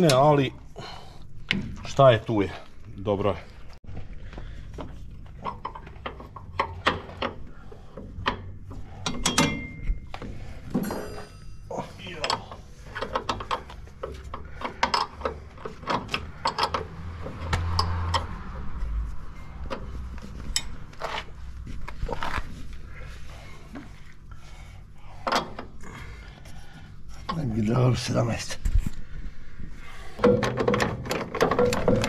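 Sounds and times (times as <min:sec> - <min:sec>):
low steady hum: 0:00.0 - 0:32.0
metallic clicks and knocks: 0:05.4 - 0:11.4, 0:12.2 - 0:18.7, 0:30.2 - 0:32.0
tools and metal pieces handled: 0:09.0 - 0:18.4.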